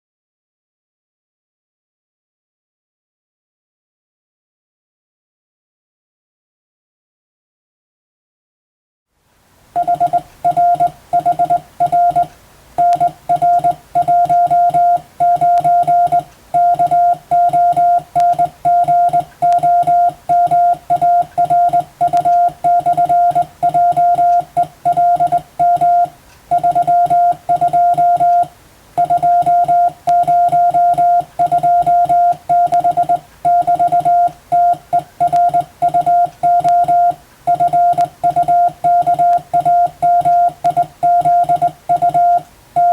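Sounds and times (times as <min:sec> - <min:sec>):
morse code tone: 0:09.8 - 0:42.9.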